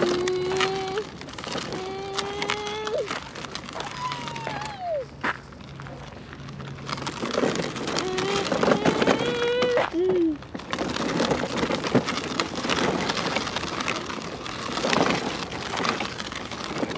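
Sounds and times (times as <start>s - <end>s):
child imitating car engine: 0.0s - 3.2s, 3.8s - 5.1s, 7.9s - 10.5s
crackling noise: 0.0s - 16.9s.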